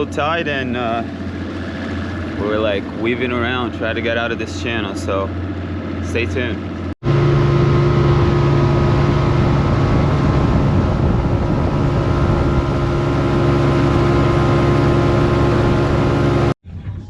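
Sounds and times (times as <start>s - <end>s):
motorboat engine hum: 0.0s - 16.6s
wind and water rushing: 7.0s - 16.6s.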